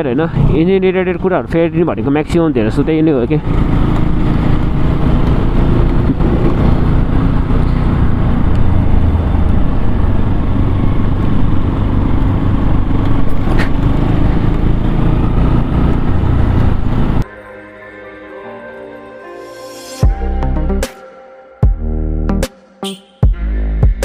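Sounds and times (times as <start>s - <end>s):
motorcycle engine running: 0.0s - 17.2s
riding wind noise: 0.0s - 17.2s.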